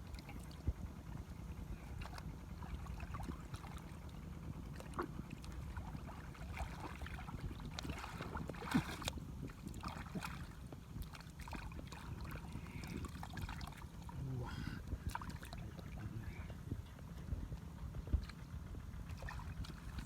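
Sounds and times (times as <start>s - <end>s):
muddy water splashing: 4.8s - 16.5s, 19.1s - 20.0s.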